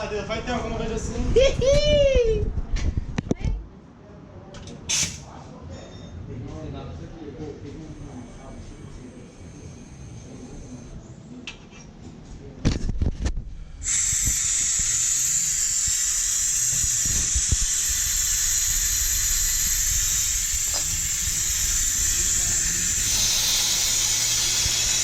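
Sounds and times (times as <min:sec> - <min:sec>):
compressed air hissing: 0:04.9 - 0:05.2, 0:07.8 - 0:11.0, 0:13.5 - 0:25.0.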